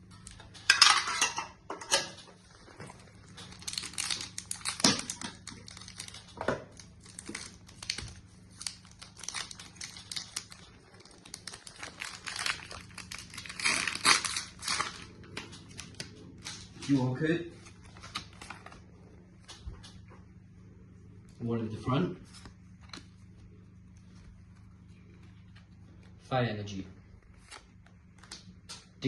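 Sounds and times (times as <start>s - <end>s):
foil wrapper crinkling and tearing: 2.8s - 18.9s.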